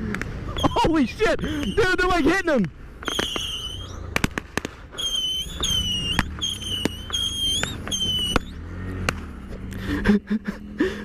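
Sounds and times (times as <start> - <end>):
whistling fireworks with pops: 0.5 - 2.4, 3.0 - 8.7
motorcycle engine running: 4.8 - 11.0.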